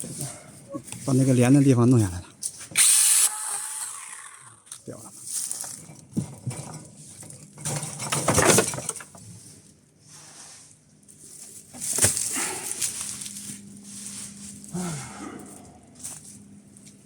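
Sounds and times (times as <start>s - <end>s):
leafy branches rustling: 10.2s - 17.0s.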